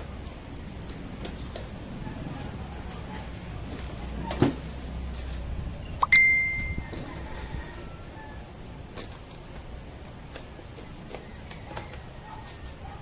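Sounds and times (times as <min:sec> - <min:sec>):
metallic clink ringing: 0:06.0 - 0:06.9.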